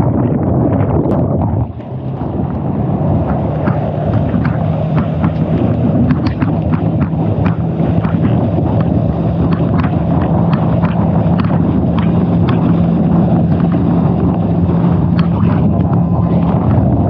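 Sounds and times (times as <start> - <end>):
boat motor running: 0.0 - 17.0
wind noise on microphone: 0.0 - 17.0
sharp taps: 3.2 - 13.8.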